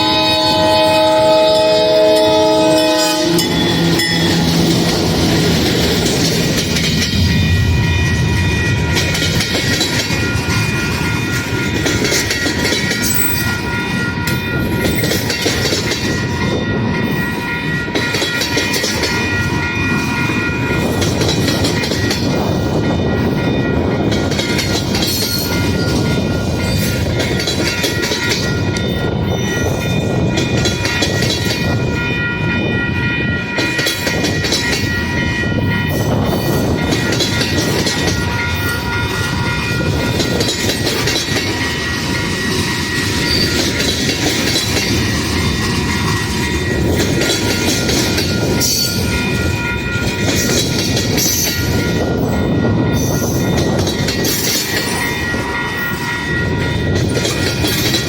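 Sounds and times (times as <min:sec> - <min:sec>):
diesel locomotive engine whine: 0:00.0 - 0:58.0
train wheels on rails: 0:00.0 - 0:58.0.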